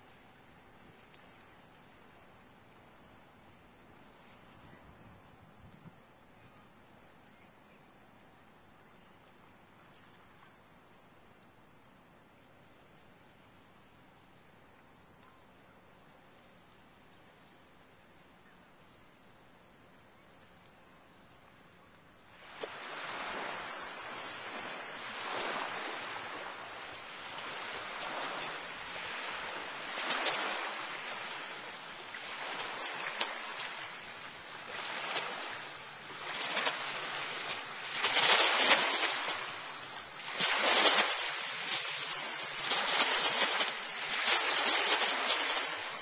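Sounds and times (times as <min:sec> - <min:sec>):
water washing and splashing: 0:24.1 - 0:46.0.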